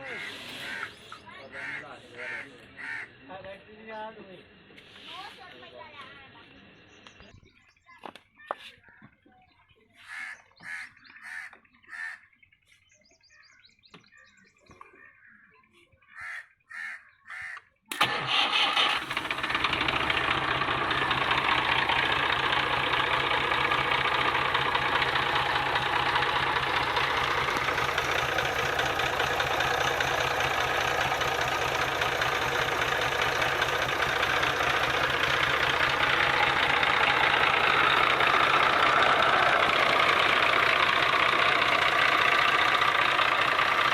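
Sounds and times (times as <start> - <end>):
tractor diesel engine starting: 0.0 - 1.8, 17.9 - 43.9
bird calling: 0.0 - 3.3, 9.9 - 17.8.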